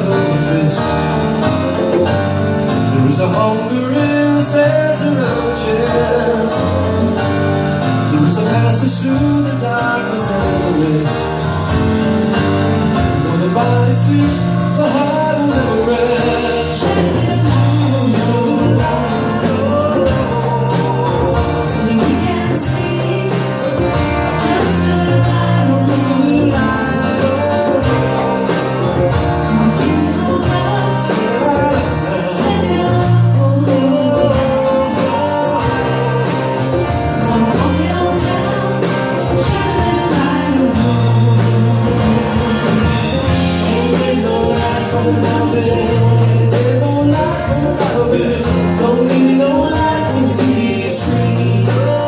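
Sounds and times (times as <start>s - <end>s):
live band music: 0.0s - 52.0s
steady drumbeat: 0.0s - 52.0s
person singing: 12.9s - 52.0s.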